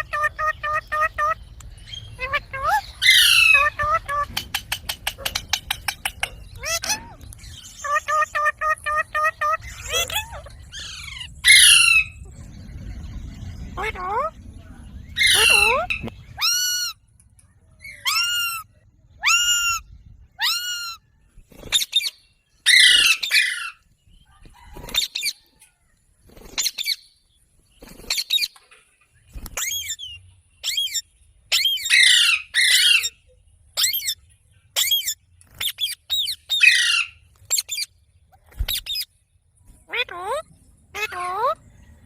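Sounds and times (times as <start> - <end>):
parakeet squawking: 0.0 - 1.4, 2.0 - 12.2, 15.2 - 17.0, 22.7 - 23.8, 29.6 - 33.2, 34.8 - 37.9, 39.9 - 41.6.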